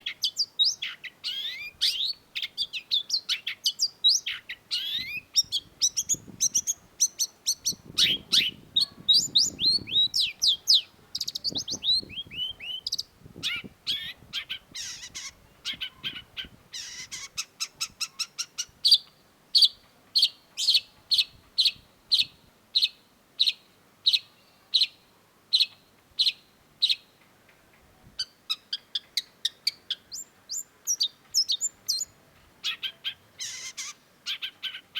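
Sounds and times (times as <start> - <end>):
shrike singing: 3.8 - 18.4.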